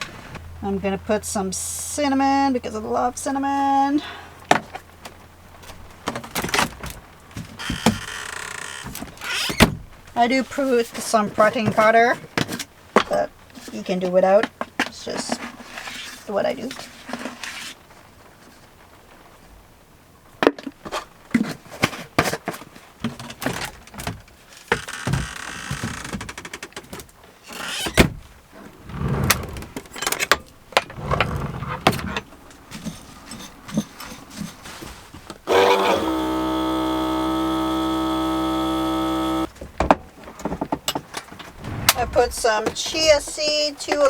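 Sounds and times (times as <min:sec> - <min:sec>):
small electric motor running: 0:35.5 - 0:39.5.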